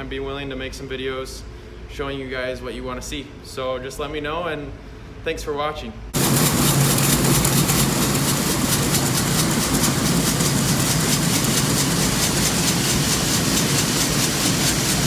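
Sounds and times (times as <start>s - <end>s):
fast even clatter: 6.2s - 15.0s
heavy machinery engine hum: 6.2s - 15.0s.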